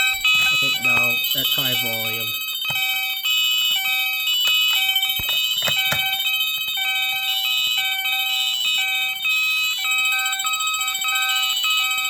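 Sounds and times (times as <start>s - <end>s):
electronic fire alarm horn: 0.0s - 12.0s
sharp clicks: 4.5s - 6.8s.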